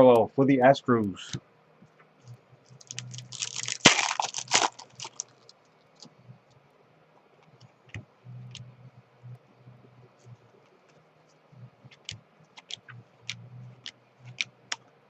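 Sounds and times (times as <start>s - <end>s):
foil wrapper crinkling: 2.8s - 5.5s
cards clicking and tapping: 11.9s - 14.8s.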